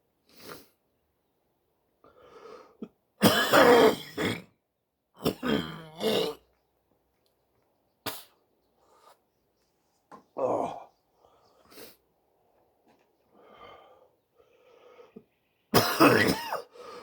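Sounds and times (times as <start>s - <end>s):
man coughing and clearing throat: 3.2s - 4.5s, 5.2s - 6.4s, 15.7s - 16.7s.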